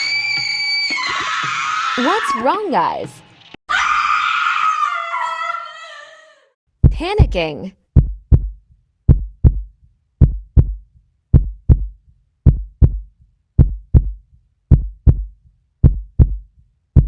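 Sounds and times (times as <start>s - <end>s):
heartbeat thumps: 6.8s - 17.0s.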